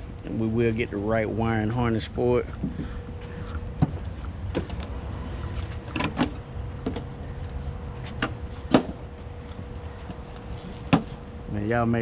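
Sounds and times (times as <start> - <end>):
steady low rumble: 0.0 - 12.0
knocks clicks and creaks: 2.5 - 11.2.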